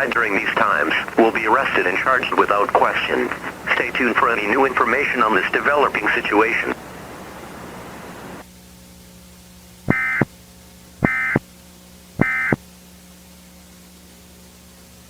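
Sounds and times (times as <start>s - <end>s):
faint low hum: 0.0s - 15.0s
buzzy data bursts: 9.9s - 10.3s, 11.0s - 11.4s, 12.2s - 12.6s.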